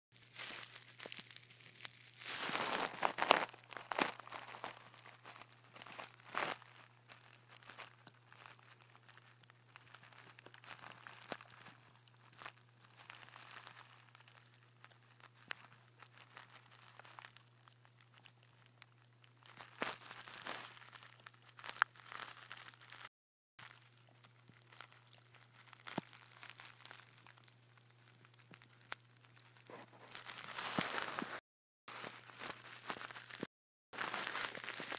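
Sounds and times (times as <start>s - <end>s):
dog gnawing on a chew: 23.6s - 30.4s.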